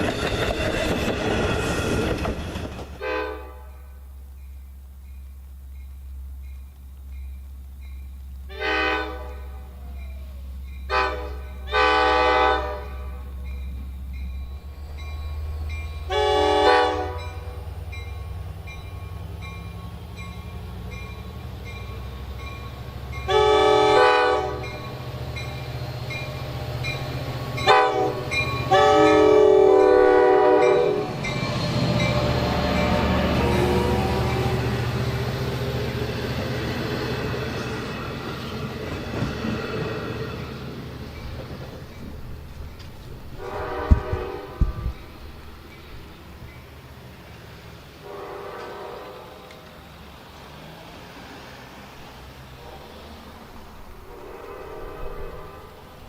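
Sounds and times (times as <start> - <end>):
locomotive horn chord: 3.0 - 4.0, 8.5 - 9.8, 10.9 - 13.3, 16.0 - 17.6, 23.2 - 24.9, 27.6 - 34.6, 43.4 - 45.0, 48.0 - 49.5.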